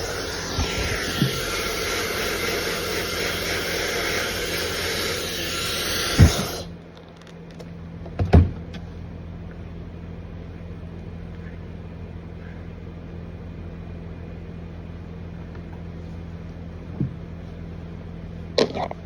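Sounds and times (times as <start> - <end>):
blow dryer blowing: 0.0 - 6.8
thump: 6.2 - 6.5.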